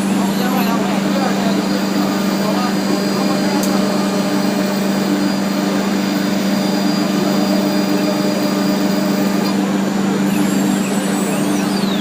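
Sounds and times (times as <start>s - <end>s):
router spindle running: 0.0s - 12.0s
faint high falling whistles: 10.3s - 12.0s.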